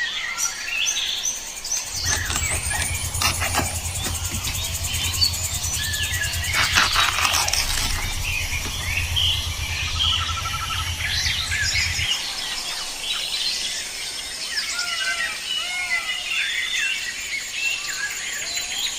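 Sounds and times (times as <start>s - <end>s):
low hum: 1.7s - 14.2s.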